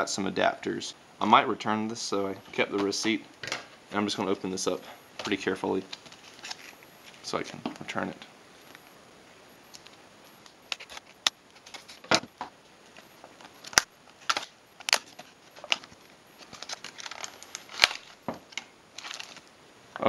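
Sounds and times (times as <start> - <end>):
handling rustle: 4.7 - 8.0, 10.6 - 19.5
packaging clicks and snaps: 9.7 - 11.8, 13.4 - 19.5.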